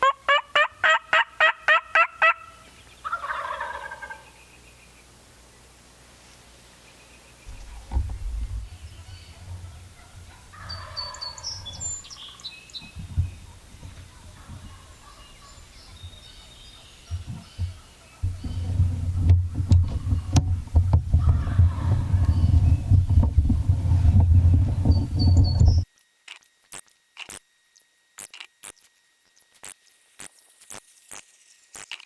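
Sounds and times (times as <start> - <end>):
turkey gobbling: 0.0 - 4.4, 7.5 - 25.8
loud low rumble: 7.5 - 10.8, 18.2 - 25.8
sharp knocks: 7.5 - 10.8, 17.1 - 24.4
high bird chirps: 8.6 - 18.8, 24.7 - 25.8.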